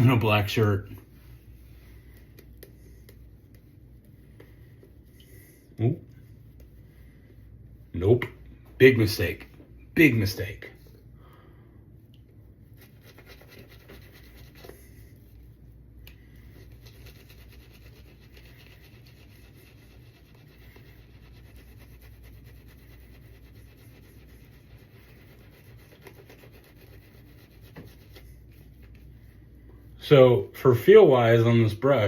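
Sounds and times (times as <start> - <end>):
shaving brush bristles scratching: 12.7 - 15.3, 16.4 - 29.1.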